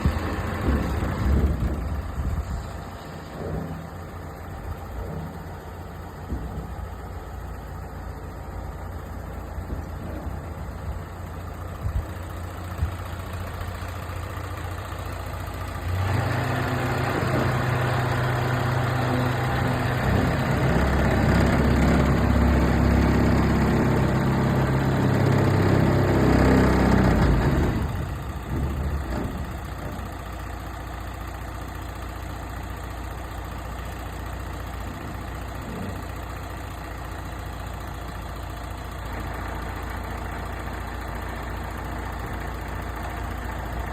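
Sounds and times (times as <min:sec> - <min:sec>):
diesel truck engine idling: 0:00.0 - 0:43.9
diesel engine revving higher: 0:15.8 - 0:29.8.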